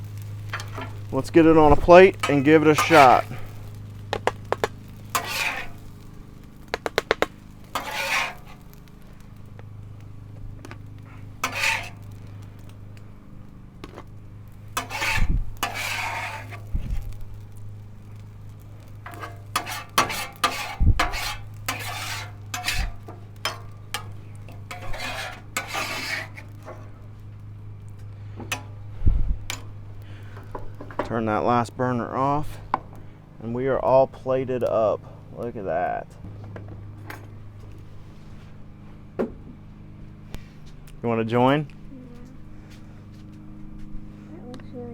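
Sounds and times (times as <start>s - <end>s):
food sizzling: 0.0s - 28.0s
steady low hum: 0.0s - 44.9s
metal spatulas scraping a griddle: 0.2s - 9.0s, 11.0s - 12.7s, 14.7s - 17.5s, 18.8s - 27.0s, 28.4s - 28.8s, 29.4s - 31.2s, 32.2s - 33.0s.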